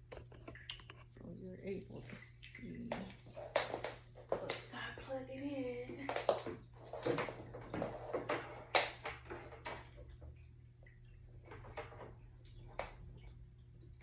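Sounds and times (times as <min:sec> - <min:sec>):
clicks taps and rustles: 0:00.0 - 0:14.0.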